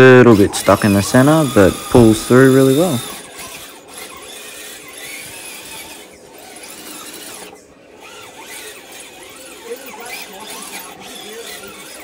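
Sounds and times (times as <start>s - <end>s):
electric motor and gears whining: 0.0s - 12.0s.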